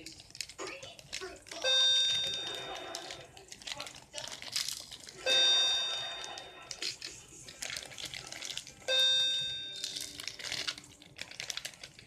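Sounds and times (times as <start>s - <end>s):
bell-like chime: 1.7s - 3.0s, 5.3s - 6.8s, 8.9s - 10.1s.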